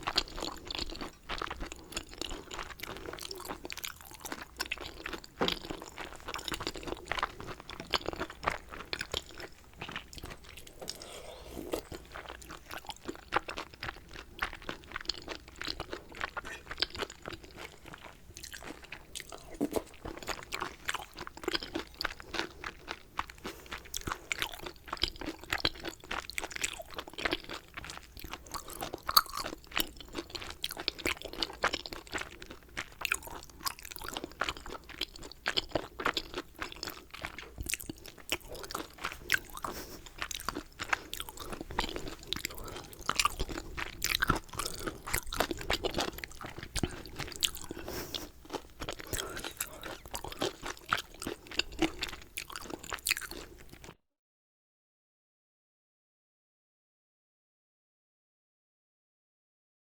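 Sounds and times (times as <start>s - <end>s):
person chewing food: 0.0s - 54.0s.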